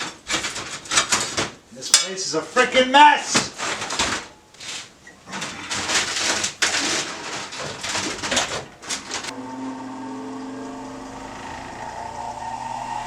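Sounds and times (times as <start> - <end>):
metal objects clattering: 0.0 - 2.3, 3.4 - 9.3
steady machine hum: 9.3 - 13.0.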